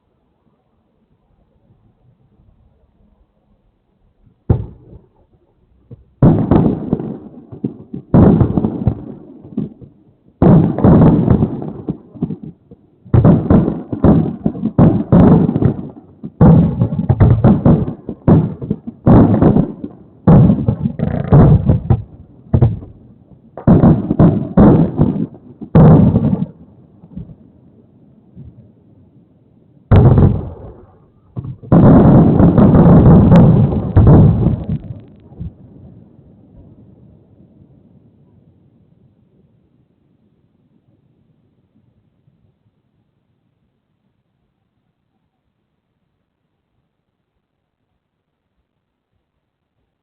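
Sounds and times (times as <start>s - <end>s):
fireworks bursting with echo: 4.4s - 27.6s, 29.9s - 36.9s.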